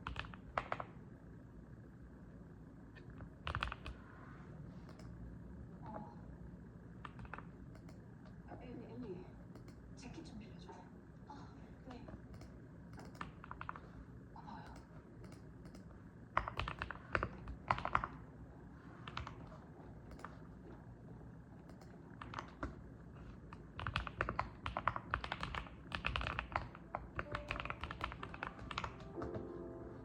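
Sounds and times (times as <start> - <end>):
mechanical keyboard typing: 0.0 - 1.0, 3.4 - 4.0, 7.0 - 8.0, 12.3 - 13.9, 14.6 - 18.3, 19.0 - 20.6, 21.6 - 22.8, 23.4 - 29.6.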